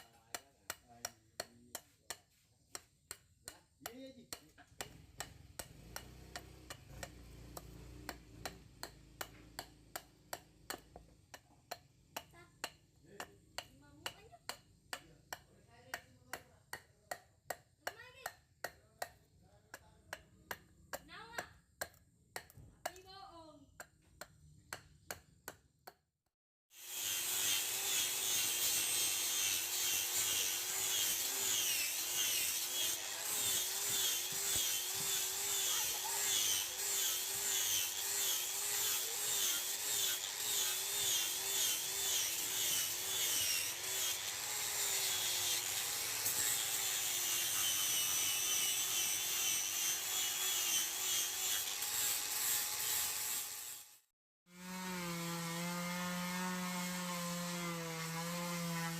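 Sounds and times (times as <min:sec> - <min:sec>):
power tool grinding steel: 0:03.8 - 0:10.1, 0:26.7 - 0:58.9.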